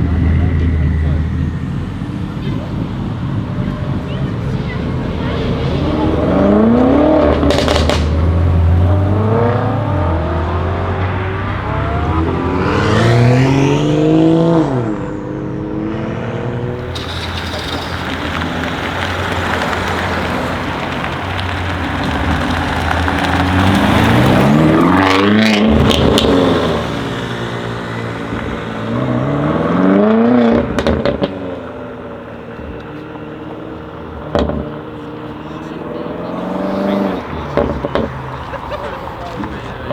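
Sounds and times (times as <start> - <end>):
car engine revving hard: 0.0 - 39.9
exhaust crackles and pops: 2.0 - 12.4, 16.7 - 39.9.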